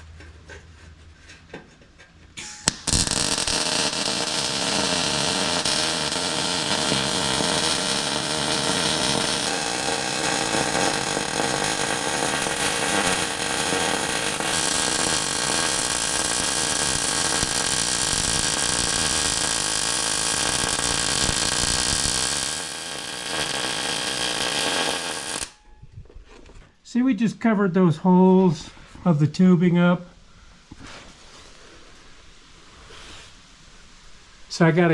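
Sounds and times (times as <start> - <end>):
angle grinder grinding steel: 2.6 - 25.6.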